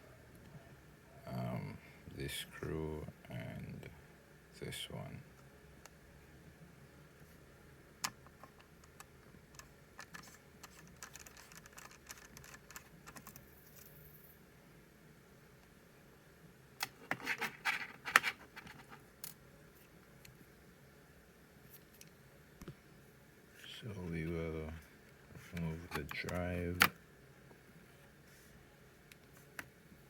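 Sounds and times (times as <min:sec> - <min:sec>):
screwdriver clicking and scratching: 0:08.5 - 0:13.8.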